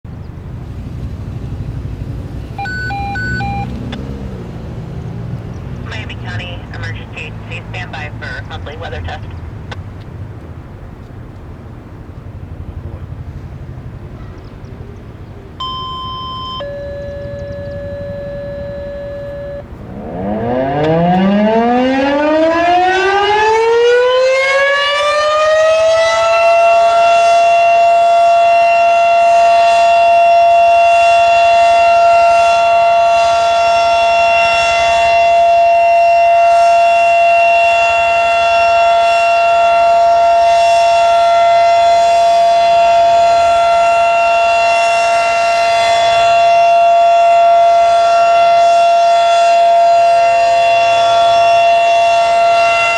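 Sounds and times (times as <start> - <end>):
held siren tone: 2.6 - 4.2, 15.6 - 52.9
mechanical siren wailing: 2.6 - 4.2, 15.6 - 52.9.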